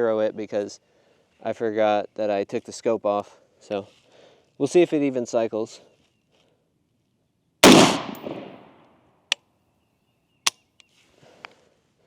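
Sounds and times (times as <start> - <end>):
rifle shot with echo: 7.6 - 8.7.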